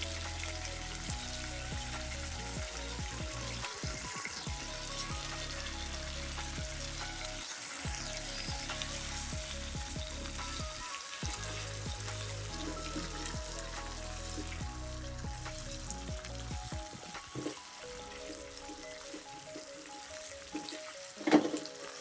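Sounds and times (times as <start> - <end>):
meat sizzling in a pan: 3.6 - 13.6.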